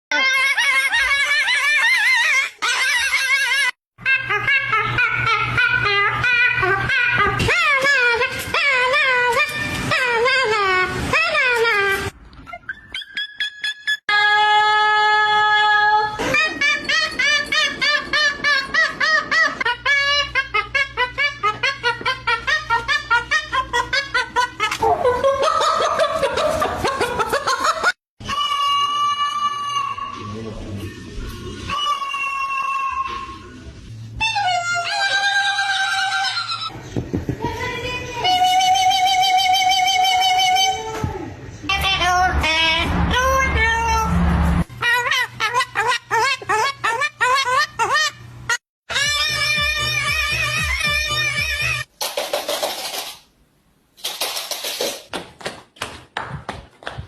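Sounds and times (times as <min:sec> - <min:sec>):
parrot laugh-like calls: 0:00.1 - 0:11.7, 0:16.1 - 0:30.3, 0:31.7 - 0:33.5, 0:43.6 - 0:51.9.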